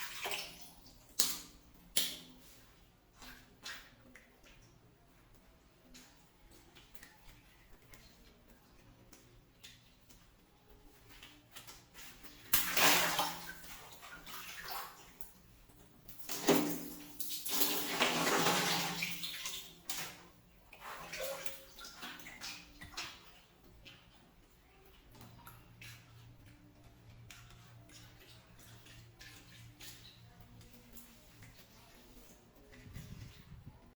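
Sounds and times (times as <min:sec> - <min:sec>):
water splashing: 0:11.9 - 0:15.3, 0:16.2 - 0:24.2, 0:27.3 - 0:33.9.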